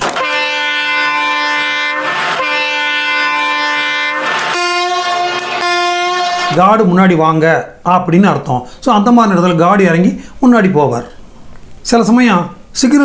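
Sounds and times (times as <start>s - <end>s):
locomotive horn blasts: 0.0s - 6.7s.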